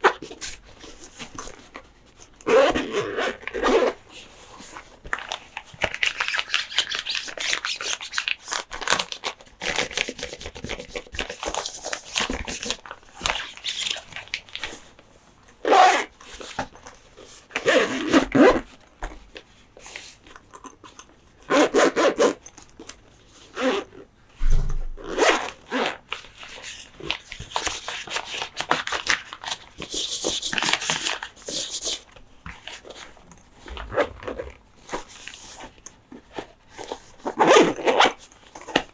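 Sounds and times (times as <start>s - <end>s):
toys and packaging rubbing: 9.6s - 12.8s
short loud scraping: 33.6s - 34.6s.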